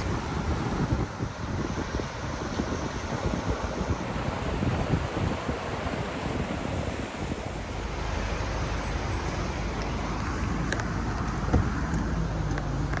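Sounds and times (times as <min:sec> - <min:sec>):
low rumble of road traffic: 0:00.0 - 0:13.0
rushing water: 0:00.0 - 0:13.0
wind: 0:00.0 - 0:13.0.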